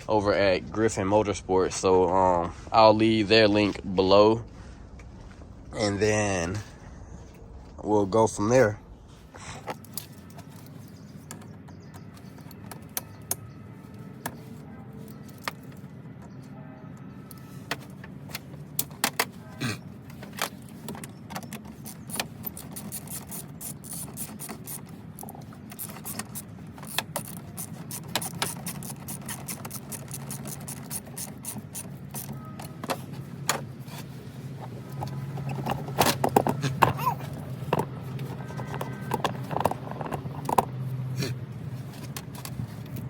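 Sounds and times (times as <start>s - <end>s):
steady low hum: 0.0s - 20.7s
tools and engine parts clinking: 9.4s - 43.0s.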